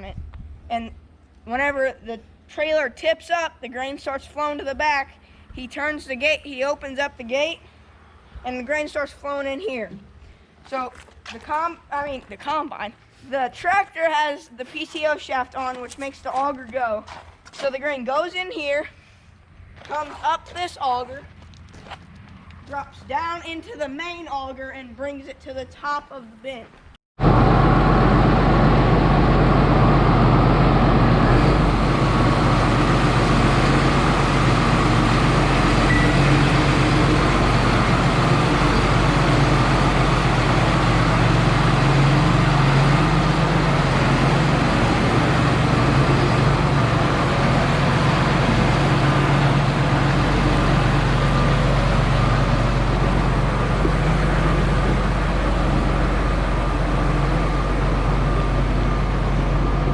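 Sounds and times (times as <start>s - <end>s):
farm engine droning: 27.2s - 59.9s.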